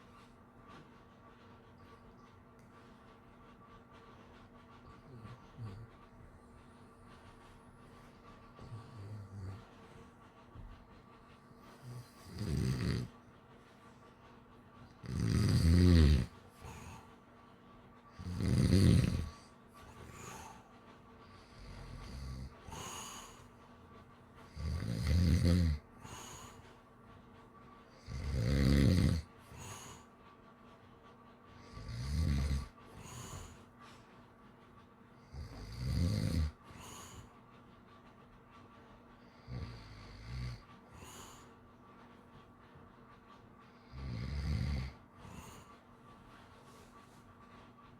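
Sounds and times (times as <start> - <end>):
dog breathing softly: 0.0 - 47.9
dog snoring: 8.6 - 9.7, 11.8 - 13.2, 15.0 - 17.0, 18.2 - 20.7, 21.4 - 23.5, 24.5 - 26.6, 27.9 - 30.0, 31.6 - 33.6, 35.3 - 37.3, 39.3 - 41.5, 43.8 - 45.7.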